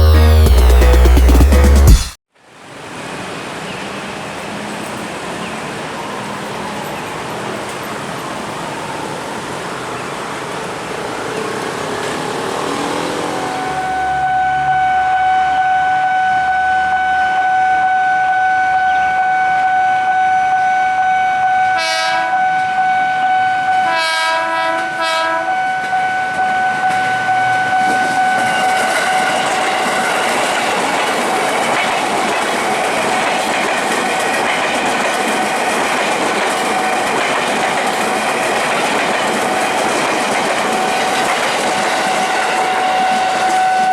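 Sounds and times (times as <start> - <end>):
level crossing warning tone: 0.0 - 2.1, 5.4 - 35.3, 36.0 - 43.9
train wheels and carriages passing: 2.4 - 17.8, 21.4 - 43.9
train horn blasts: 13.3 - 30.8, 41.0 - 43.9.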